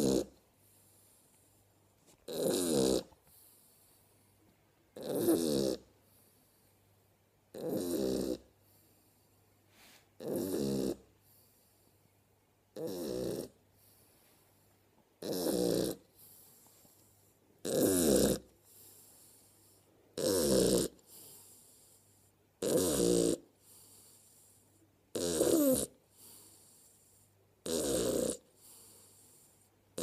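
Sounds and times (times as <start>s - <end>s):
puppy snoring: 0.0s - 1.5s, 2.1s - 6.7s, 7.5s - 12.0s, 12.7s - 14.3s, 15.2s - 30.0s
faint breath: 8.6s - 10.2s, 13.7s - 14.9s, 16.1s - 17.4s, 18.6s - 20.0s, 28.5s - 29.8s.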